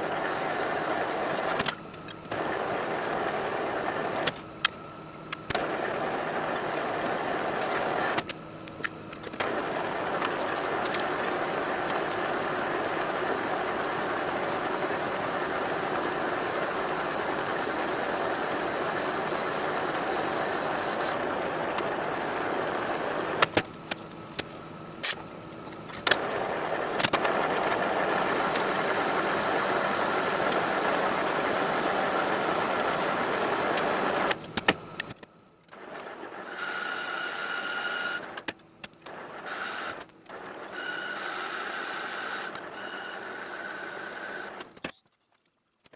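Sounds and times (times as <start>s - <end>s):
metal lathe whining: 2.4s - 4.3s, 9.5s - 23.6s, 27.4s - 34.4s, 40.7s - 44.6s.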